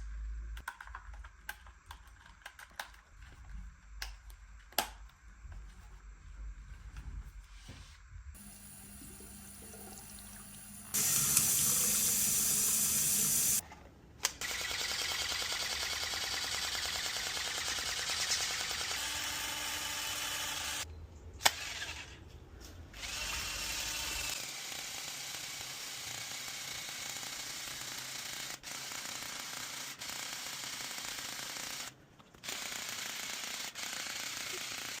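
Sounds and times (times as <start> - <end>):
electric pump buzzing rattle: 8.4 - 13.6.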